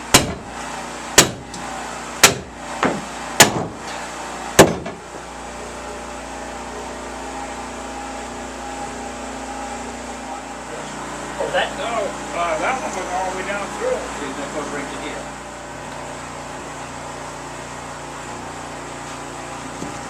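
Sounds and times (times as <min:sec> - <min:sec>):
sharp hammer blows: 0:01.2 - 0:01.4, 0:02.2 - 0:03.8.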